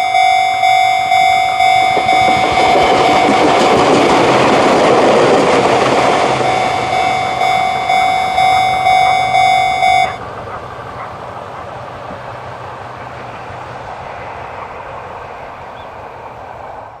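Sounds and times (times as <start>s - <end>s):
level crossing warning bell: 0.0s - 10.3s
rushing noise with low hum: 1.8s - 17.0s.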